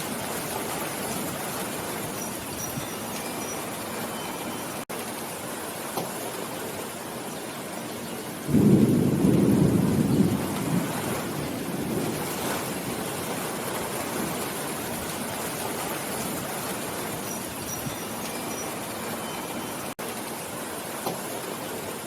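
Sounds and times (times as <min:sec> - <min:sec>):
steady rain falling: 0:00.0 - 0:22.0
thunder rolling: 0:08.4 - 0:17.2.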